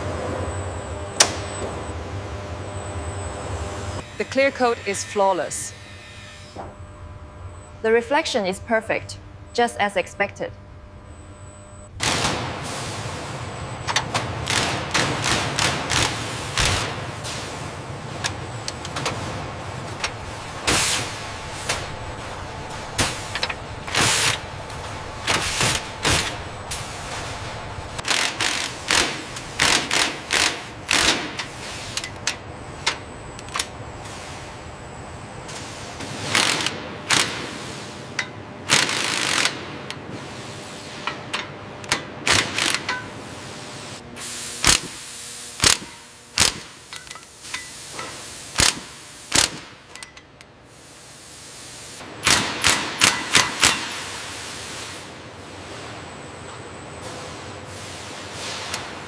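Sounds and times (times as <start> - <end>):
steady machinery hum: 0.0 - 59.0
factory hiss: 12.0 - 13.6, 14.3 - 32.1, 34.0 - 34.8, 42.3 - 49.8, 50.6 - 56.1, 57.0 - 59.0
machinery clanks: 12.0 - 33.8
sharp machine clicks: 28.0 - 31.4, 38.7 - 39.6.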